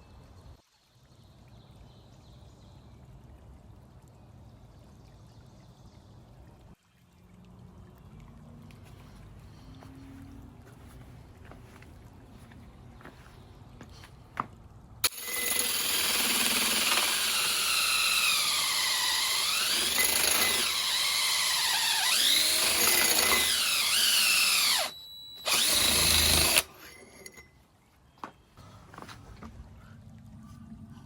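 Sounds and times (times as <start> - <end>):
electric power tool running: 15.0 - 26.9.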